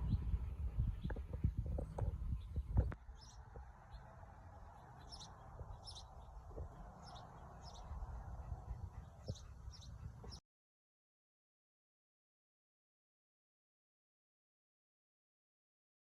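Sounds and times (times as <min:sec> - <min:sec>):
low outdoor background: 0:00.0 - 0:10.4.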